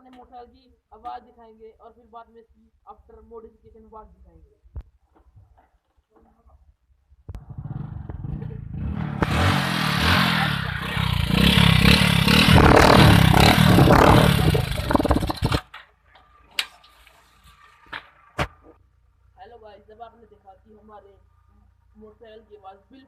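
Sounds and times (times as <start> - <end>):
motorcycle engine running: 7.4 - 15.6.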